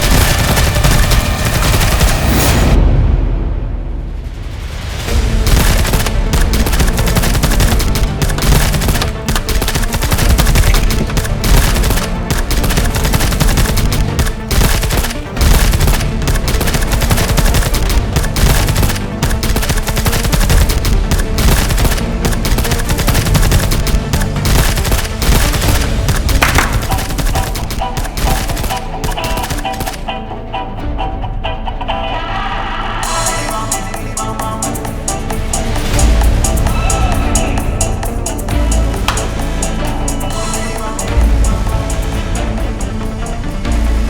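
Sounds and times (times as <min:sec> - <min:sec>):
rapid gunfire-like shots: 0:00.0 - 0:02.8, 0:05.1 - 0:30.1, 0:38.5 - 0:39.8
background music with bass line: 0:33.0 - 0:44.0.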